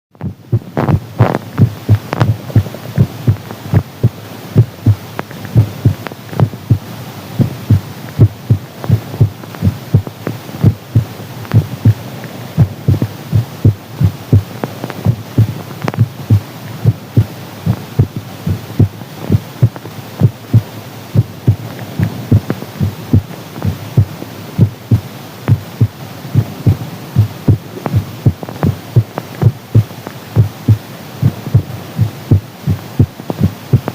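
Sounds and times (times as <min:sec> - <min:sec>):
heartbeat thumps: 0:00.2 - 0:33.9.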